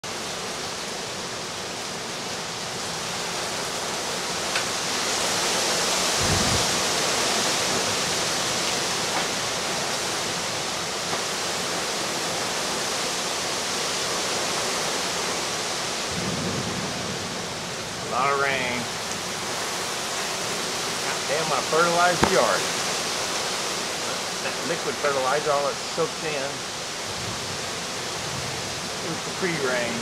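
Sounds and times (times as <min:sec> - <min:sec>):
heavy wind-driven rain: 0:00.0 - 0:30.0
low wind buffet: 0:03.8 - 0:12.8.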